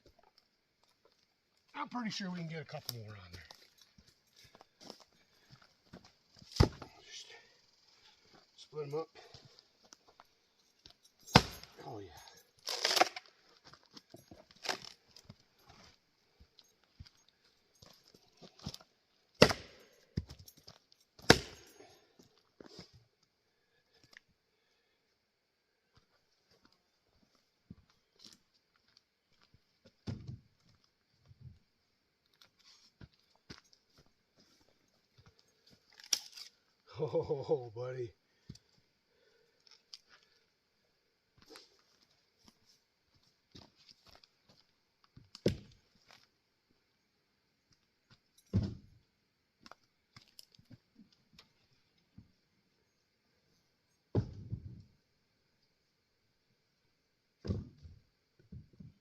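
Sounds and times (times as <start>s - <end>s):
axe chopping firewood: 6.5s - 6.9s, 11.2s - 11.8s, 12.7s - 13.3s, 19.4s - 20.4s, 21.2s - 21.8s, 45.4s - 45.7s.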